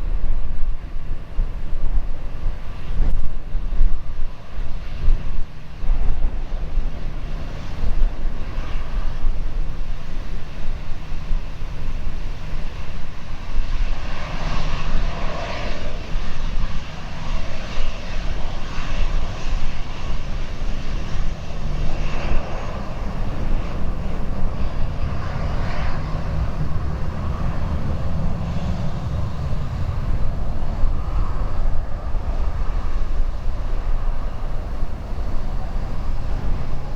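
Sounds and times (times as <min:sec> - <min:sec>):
jet engines roaring: 0:00.0 - 0:36.9.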